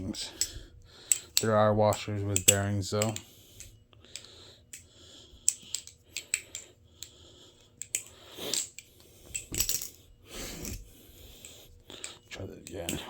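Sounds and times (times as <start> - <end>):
butterfly knife metallic clicks: 0.4 - 4.8.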